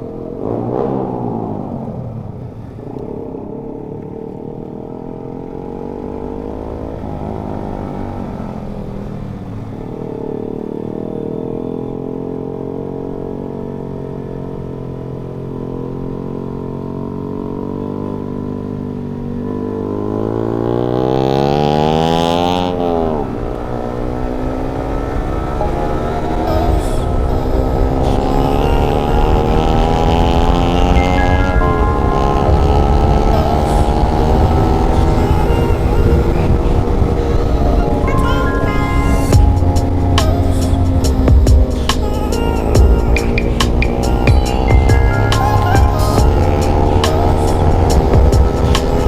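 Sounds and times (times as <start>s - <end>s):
motorcycle engine running: 0.0s - 49.0s.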